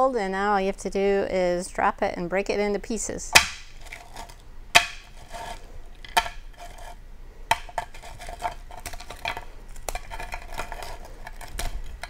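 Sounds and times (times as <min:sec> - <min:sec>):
peanut brittle cracking: 0:03.3 - 0:06.8, 0:07.5 - 0:12.0.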